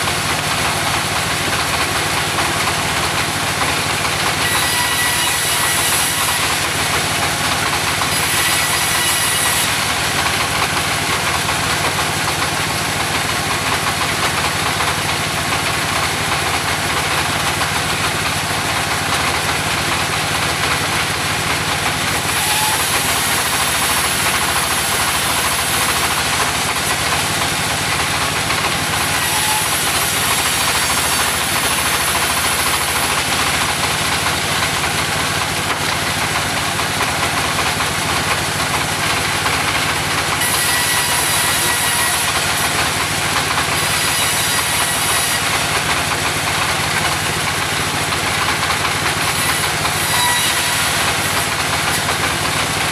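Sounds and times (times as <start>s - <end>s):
sawmill engine humming: 0.0s - 52.9s
saw hissing through timber: 22.0s - 35.1s.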